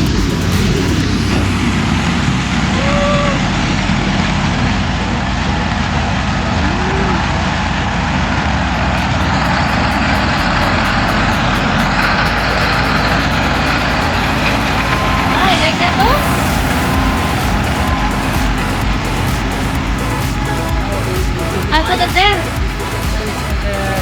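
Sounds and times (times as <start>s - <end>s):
harvester engine running under load: 8.8s - 24.0s.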